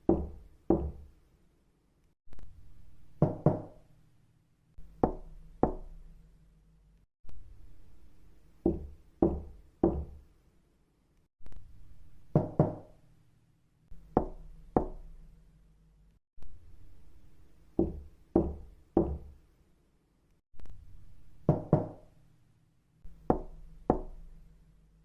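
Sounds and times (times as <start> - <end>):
knuckles knocking on a door: 0.0 - 1.1, 3.2 - 3.7, 8.6 - 10.2, 12.4 - 12.9, 14.2 - 15.0, 17.8 - 19.3, 21.5 - 22.0, 23.3 - 24.1.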